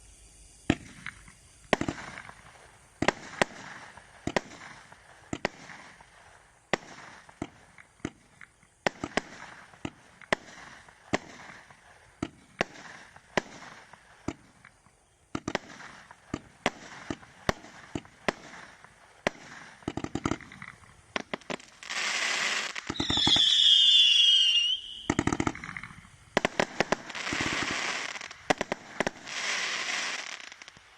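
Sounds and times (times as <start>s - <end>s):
firework crackle: 0.0s - 30.9s
firework shots: 0.6s - 30.9s
falling whistle: 22.9s - 25.3s.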